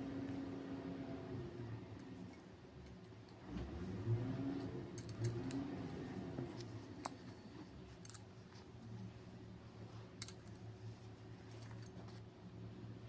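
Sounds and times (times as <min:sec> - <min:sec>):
steady low hum: 0:00.0 - 0:13.0
small clicks and handling noises: 0:01.9 - 0:03.7, 0:04.5 - 0:05.7, 0:06.4 - 0:09.2, 0:10.0 - 0:12.3.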